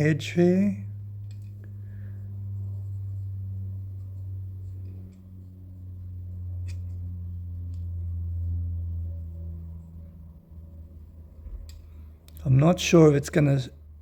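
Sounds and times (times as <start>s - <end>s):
low electrical hum: 0.0s - 14.0s.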